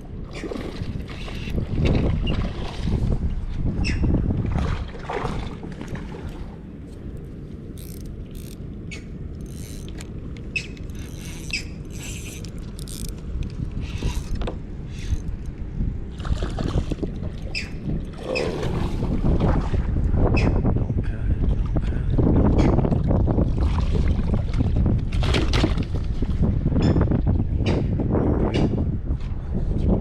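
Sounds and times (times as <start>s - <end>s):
fishing reel cranking and clicking: 7.8s - 8.6s, 9.4s - 15.5s.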